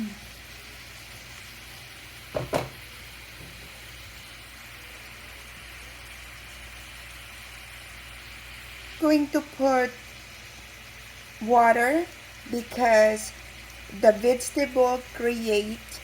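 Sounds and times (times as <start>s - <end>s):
food sizzling in a frying pan: 0.0s - 16.0s
brief knock: 2.3s - 2.8s.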